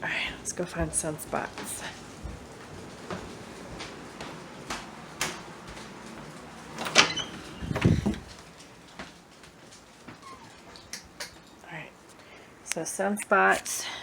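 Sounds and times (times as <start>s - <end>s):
sliding door clicks and clack: 2.1s - 9.0s
low thumps: 7.6s - 8.4s.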